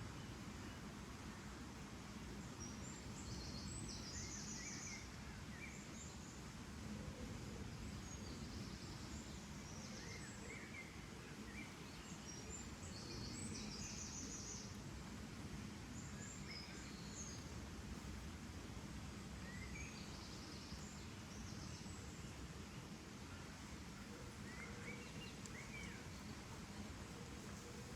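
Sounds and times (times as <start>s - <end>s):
low background hiss and rumble: 0.0s - 27.9s
small birds chirping: 19.4s - 27.9s.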